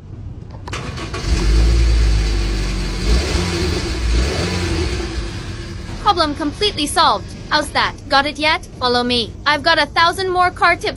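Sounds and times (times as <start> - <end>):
car engine revving: 0.7 - 8.4.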